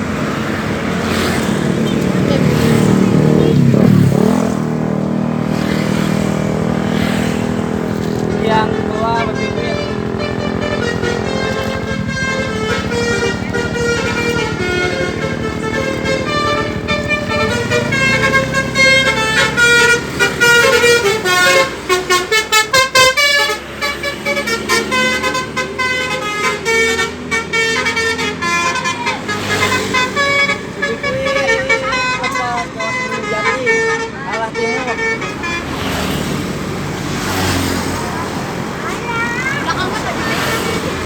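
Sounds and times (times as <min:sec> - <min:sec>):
bus engine running: 0:00.0 - 0:41.0
musical air horn playing a tune: 0:06.9 - 0:36.2.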